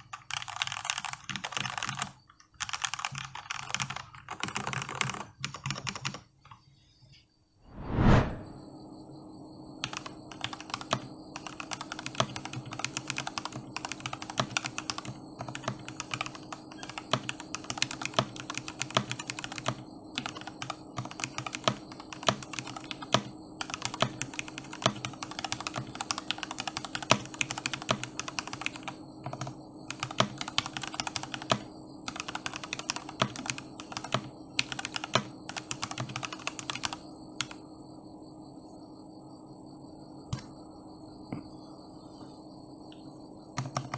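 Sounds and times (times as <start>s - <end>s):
fast typing on mechanical keyboard: 0.0s - 6.3s, 9.8s - 37.6s, 43.6s - 43.9s.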